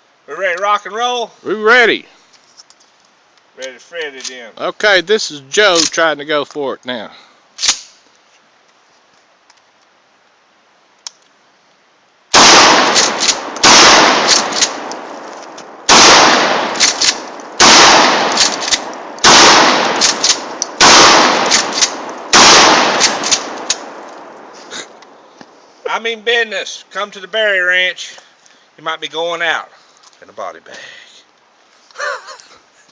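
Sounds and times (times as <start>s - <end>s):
gunshots echoing: 12.3s - 24.6s.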